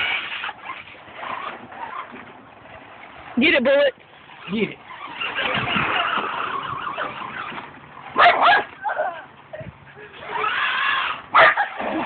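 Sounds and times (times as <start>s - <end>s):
dog barking: 8.2s - 8.7s, 11.3s - 11.7s.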